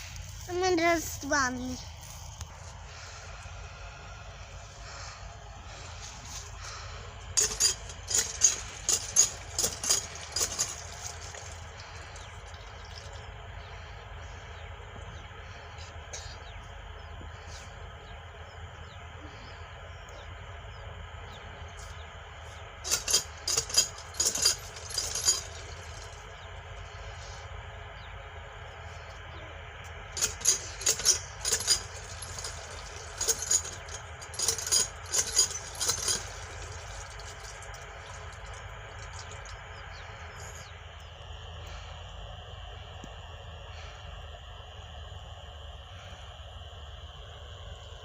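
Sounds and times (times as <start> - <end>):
dry straw crackling and rustling: 0.0 - 3.2
steady low hum: 0.0 - 48.0.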